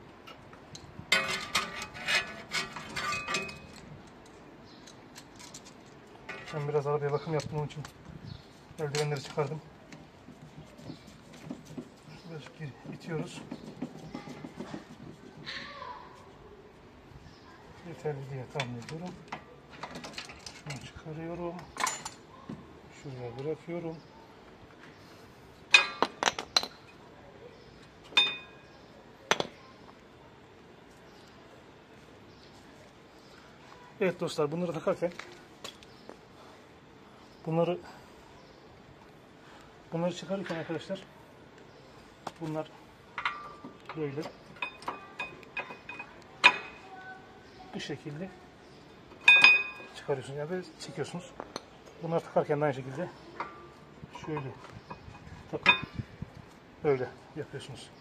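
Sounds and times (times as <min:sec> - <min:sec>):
metal parts clinking and scraping: 0:01.1 - 0:07.6.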